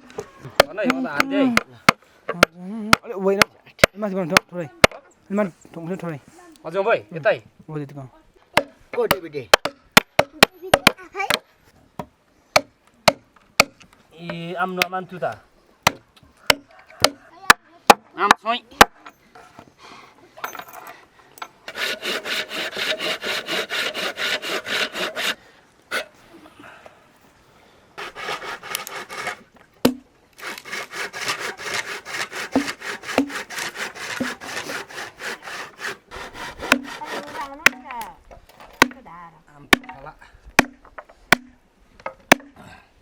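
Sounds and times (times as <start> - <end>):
sharp knocks: 8.6 - 11.4, 15.9 - 17.2, 32.5 - 33.4, 36.6 - 37.0, 39.7 - 40.0, 40.6 - 42.6
hand saw cutting wood: 21.7 - 26.1, 28.0 - 29.5, 30.4 - 38.0.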